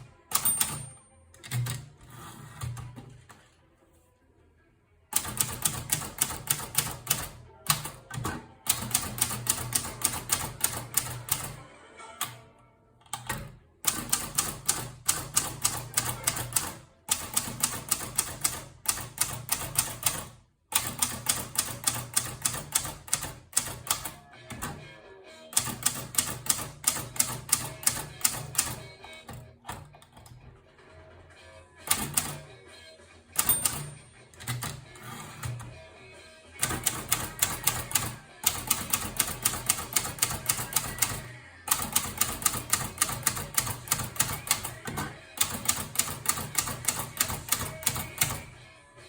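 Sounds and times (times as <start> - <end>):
typewriter keystrokes: 0.0 - 1.9, 5.2 - 11.6, 13.2 - 24.8, 25.6 - 30.3, 31.8 - 32.4, 33.4 - 34.8, 36.6 - 48.5.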